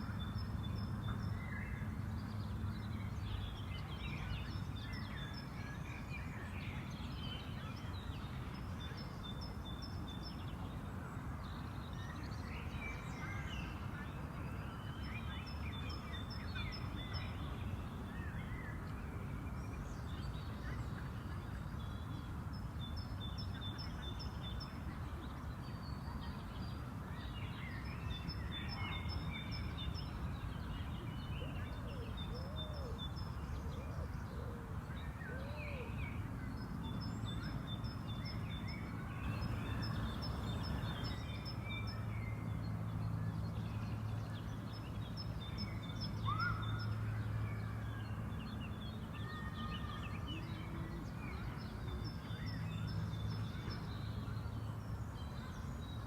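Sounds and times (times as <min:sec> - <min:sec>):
birds singing and chirping: 0:36.9 - 0:42.4.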